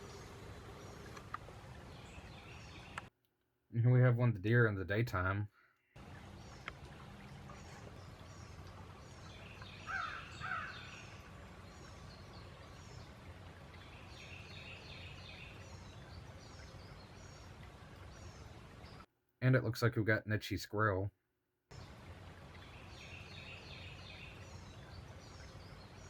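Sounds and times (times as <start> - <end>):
small birds chirping: 0.0 - 3.1, 5.6 - 19.1, 21.7 - 26.0
steady low hiss: 0.0 - 3.1
crow cawing: 9.8 - 11.1.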